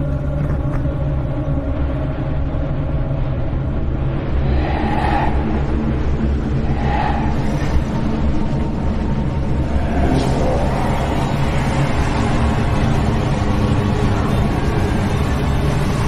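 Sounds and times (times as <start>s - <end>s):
low rumble: 0.1s - 15.7s
higher swells: 4.1s - 12.9s.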